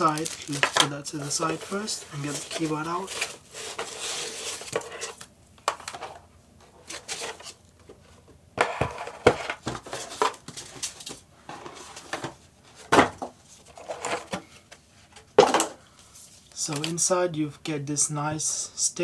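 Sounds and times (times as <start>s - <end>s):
cardboard packaging rustling: 0.0s - 7.7s, 8.7s - 14.7s.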